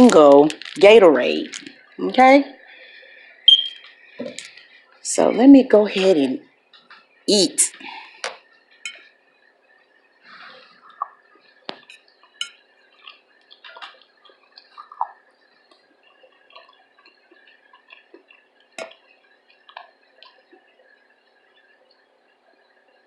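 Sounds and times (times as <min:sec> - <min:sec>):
chewing with wet mouth clicks: 0:11.8 - 0:15.9, 0:16.5 - 0:20.5.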